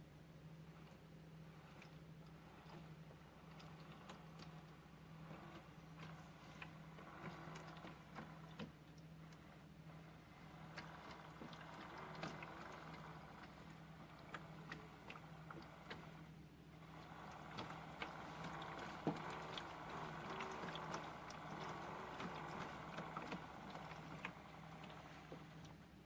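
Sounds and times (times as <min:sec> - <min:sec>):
motor hum: 0:00.0 - 0:26.0
small clicks: 0:01.6 - 0:25.8
water sloshing in drum: 0:09.9 - 0:16.2, 0:16.8 - 0:25.8.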